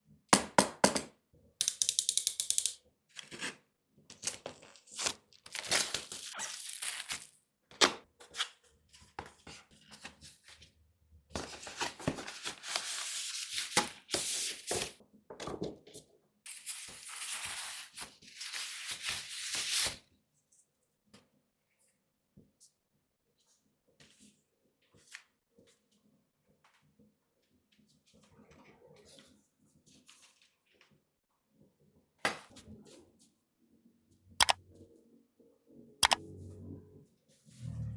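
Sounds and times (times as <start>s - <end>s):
tear strip ticking: 1.6s - 2.8s
packaging sliding and rustling: 4.2s - 7.3s.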